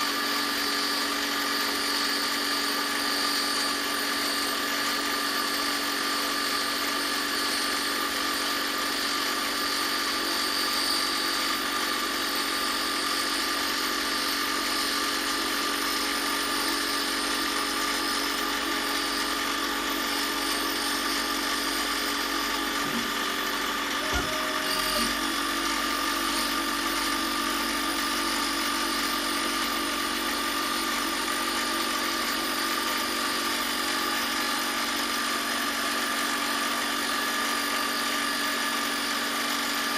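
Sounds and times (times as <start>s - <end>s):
power tool motor running: 0.0s - 39.9s.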